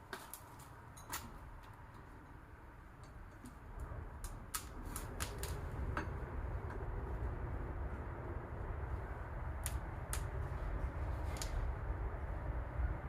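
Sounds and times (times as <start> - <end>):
low rumble: 3.5 - 13.0.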